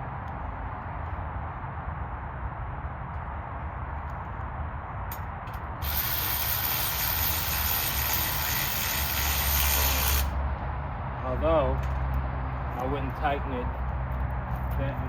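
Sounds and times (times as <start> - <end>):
ratchet wrench ratcheting: 5.8 - 10.4.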